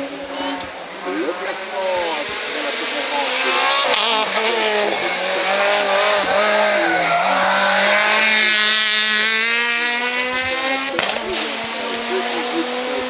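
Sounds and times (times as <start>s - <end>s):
race car engine at high revs: 0.0s - 13.0s.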